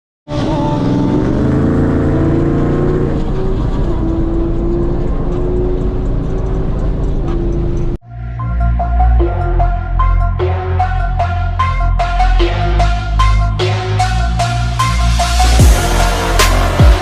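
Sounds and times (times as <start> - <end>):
loud car engine running: 0.3 - 8.0, 14.8 - 17.0.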